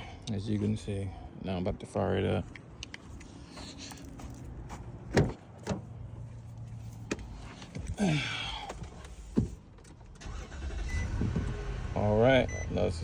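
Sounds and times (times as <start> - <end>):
car door clicks and knocks: 5.1 - 5.9.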